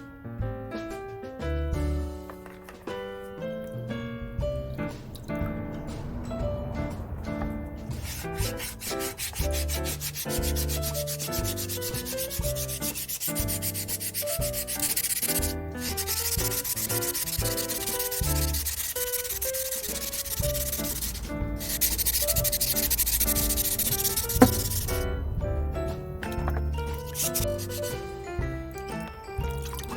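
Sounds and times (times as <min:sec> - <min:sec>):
background music: 0:00.0 - 0:29.9
sanding strokes on metal: 0:07.9 - 0:24.9, 0:27.1 - 0:28.0.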